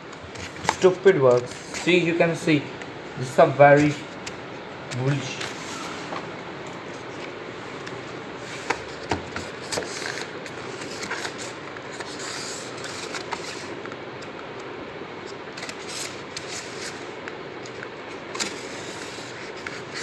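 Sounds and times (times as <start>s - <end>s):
packaging rustling and scraping: 5.0s - 13.8s, 15.5s - 20.0s.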